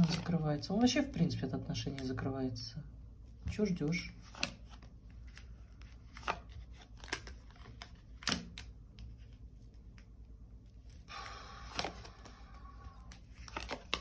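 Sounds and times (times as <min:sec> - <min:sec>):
cards snapping and tapping: 0:06.0 - 0:09.0, 0:11.7 - 0:12.4, 0:13.0 - 0:14.0.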